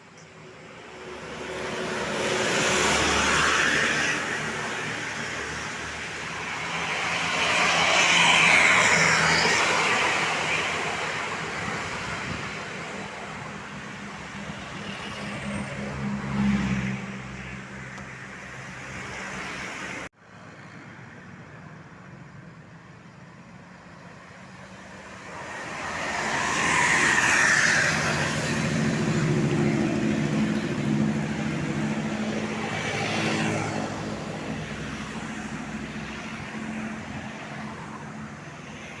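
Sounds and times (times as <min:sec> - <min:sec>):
bus driving past: 0:00.3 - 0:39.0
bus engine running: 0:21.3 - 0:39.0.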